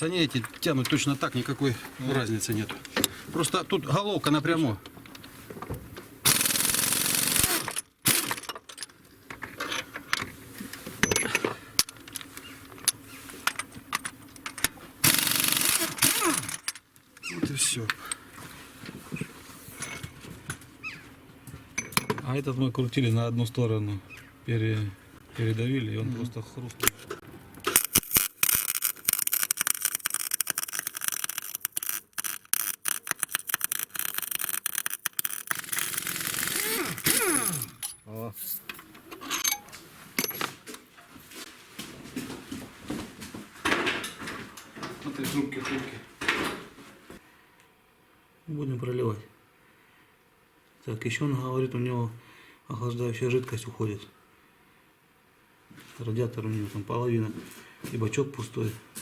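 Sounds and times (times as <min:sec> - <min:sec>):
rapid mechanical rattling: 0:06.2 - 0:08.9, 0:13.4 - 0:16.8, 0:27.8 - 0:38.0
wrenches clinking on metal: 0:11.0 - 0:17.4, 0:21.8 - 0:22.3, 0:35.2 - 0:40.5.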